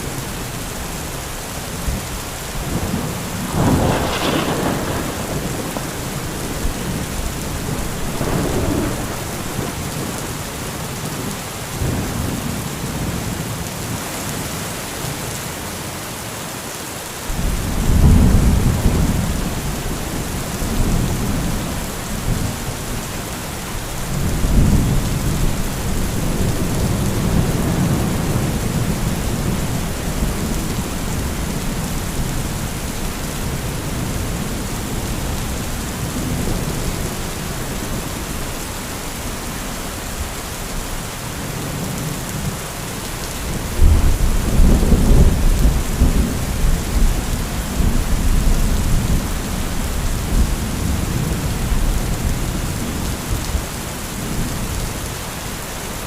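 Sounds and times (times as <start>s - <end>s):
heavy rain: 0.0s - 56.0s
thunder rumbling: 1.7s - 10.8s, 17.3s - 40.3s, 43.4s - 53.5s.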